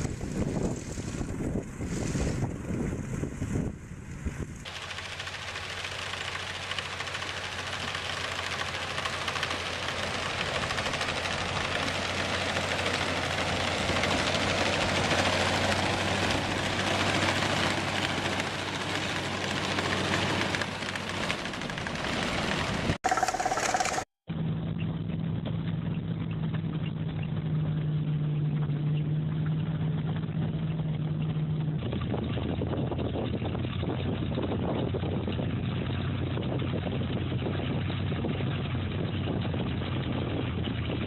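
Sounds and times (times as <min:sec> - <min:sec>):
heavy vehicle engine running: 0:00.0 - 0:32.1.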